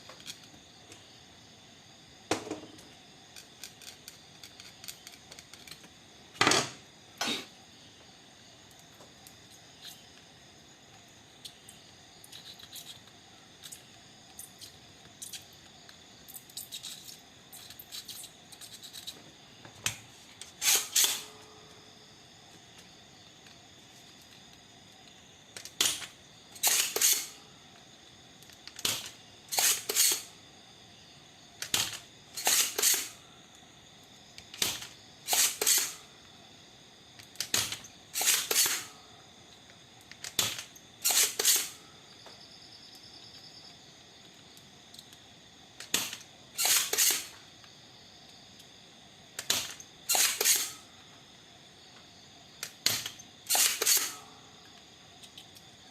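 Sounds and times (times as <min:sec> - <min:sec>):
desoldering pump snap: 0:31.6 - 0:33.1, 0:34.5 - 0:35.9, 0:45.8 - 0:47.4, 0:49.4 - 0:50.7.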